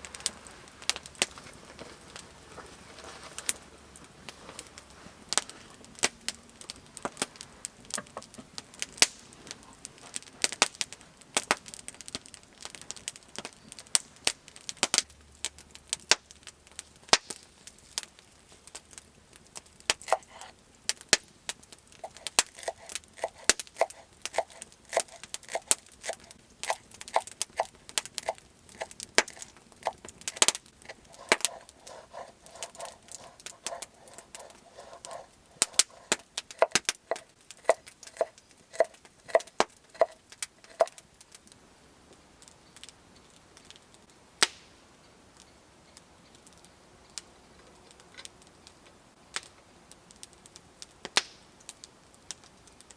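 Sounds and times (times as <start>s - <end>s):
sharp cracks and clicks: 18.0s - 41.5s, 50.2s - 52.9s.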